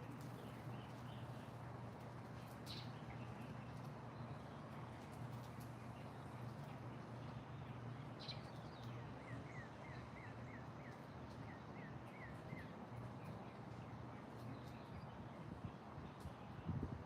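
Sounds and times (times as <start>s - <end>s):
low outdoor hum: 0.0s - 17.0s.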